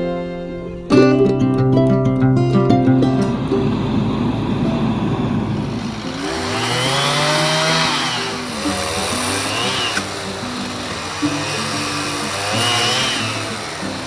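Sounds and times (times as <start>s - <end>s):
background music: 0.0s - 4.6s, 5.8s - 14.0s
small gasoline engine revving: 3.2s - 14.0s.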